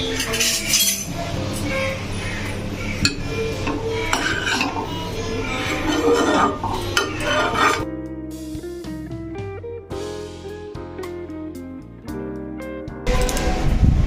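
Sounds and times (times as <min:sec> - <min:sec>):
cutlery clinking on dishes: 0:00.0 - 0:01.1, 0:03.0 - 0:07.8
faint background music: 0:00.0 - 0:14.0
plucked guitar music: 0:06.5 - 0:13.6.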